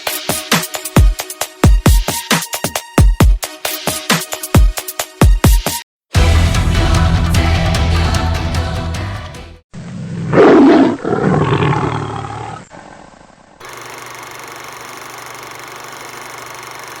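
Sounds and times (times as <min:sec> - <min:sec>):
music: 0:00.0 - 0:09.6
roar sound effect: 0:09.8 - 0:13.4.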